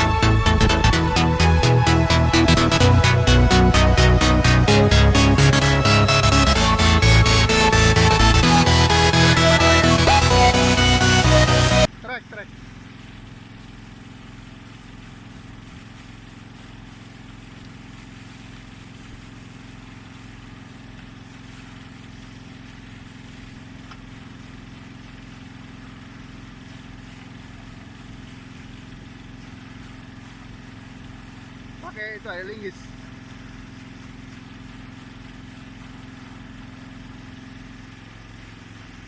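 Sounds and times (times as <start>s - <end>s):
diesel engine idling: 0.0s - 13.6s.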